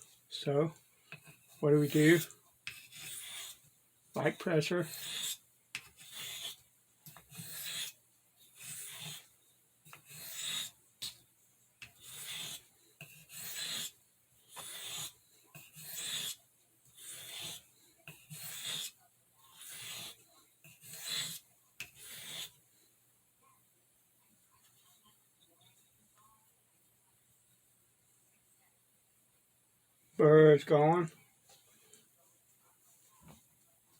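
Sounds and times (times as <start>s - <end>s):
knife scraping on sharpening stone: 1.1s - 3.6s, 4.8s - 8.0s, 8.6s - 9.2s, 9.9s - 11.2s, 11.8s - 13.9s, 14.5s - 16.4s, 17.0s - 22.5s.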